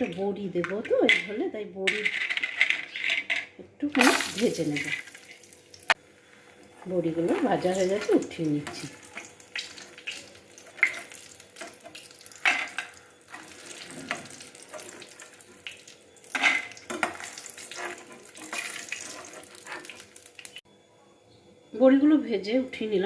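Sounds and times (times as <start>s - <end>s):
spatula scraping and knocking pan: 0.0s - 5.2s, 6.8s - 15.7s, 16.3s - 20.6s
oil sizzling in a frying pan: 4.0s - 6.1s, 7.0s - 20.6s.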